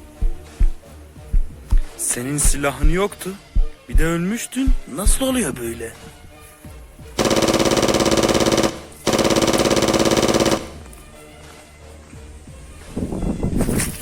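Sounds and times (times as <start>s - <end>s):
automatic machine-gun fire: 7.2s - 10.9s.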